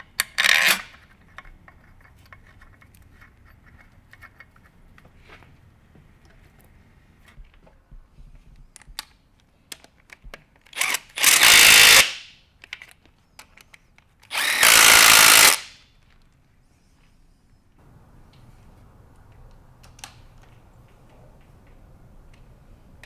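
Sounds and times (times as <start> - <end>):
power tool bursts: 10.8 - 12.3, 14.3 - 15.8.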